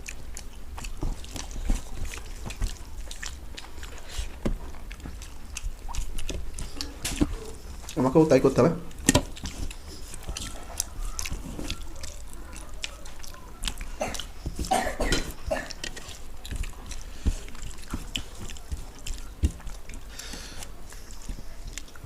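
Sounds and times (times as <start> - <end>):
chewing and lip smacks: 0.0 - 22.0.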